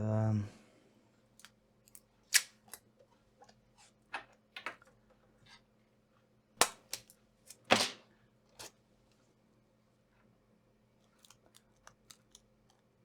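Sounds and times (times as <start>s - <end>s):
tape snaps: 1.4s - 2.8s, 6.6s - 8.0s.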